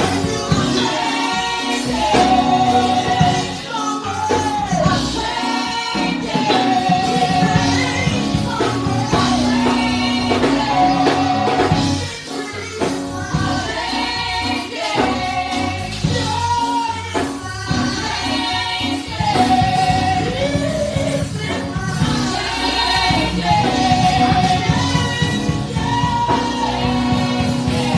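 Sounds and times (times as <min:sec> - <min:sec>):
band with pulsing bass: 0:00.0 - 0:27.9
voices singing: 0:00.0 - 0:27.9.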